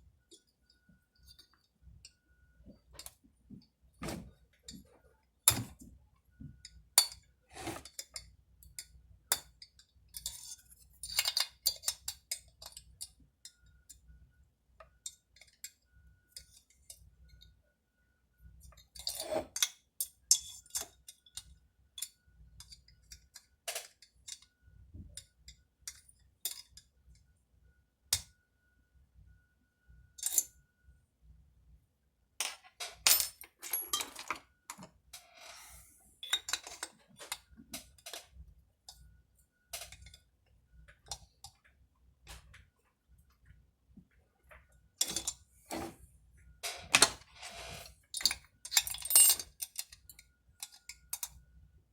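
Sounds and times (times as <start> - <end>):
metal tools clinking: 32.4 - 35.6, 36.2 - 38.3, 45.0 - 45.9, 46.6 - 51.3.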